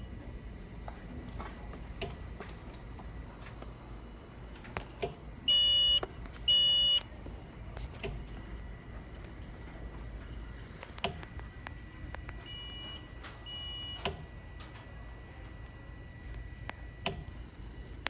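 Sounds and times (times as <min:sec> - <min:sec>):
smoke detector alarm beeps: 0:05.4 - 0:07.1, 0:12.4 - 0:14.3.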